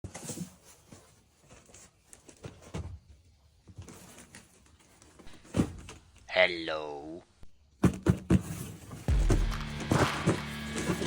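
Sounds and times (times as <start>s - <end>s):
loud thump: 9.1s - 10.4s.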